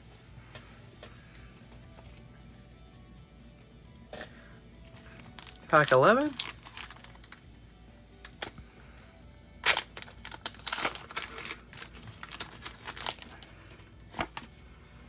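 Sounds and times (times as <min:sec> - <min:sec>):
foil wrapper crinkling and tearing: 0:04.9 - 0:07.4, 0:09.6 - 0:14.5.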